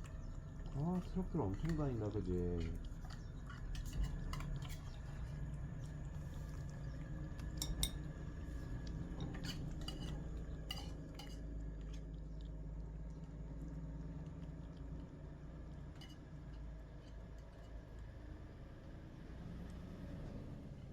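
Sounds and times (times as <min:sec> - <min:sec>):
steady low rumble: 0:00.0 - 0:20.9
food clinking in dish: 0:07.6 - 0:08.1, 0:09.2 - 0:11.5.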